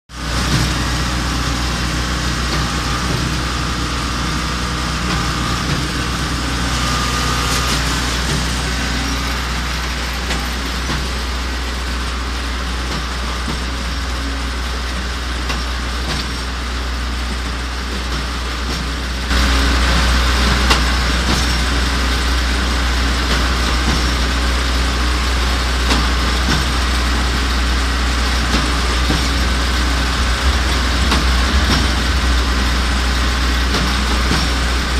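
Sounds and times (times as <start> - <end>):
diesel engine running: 0.1 - 34.9.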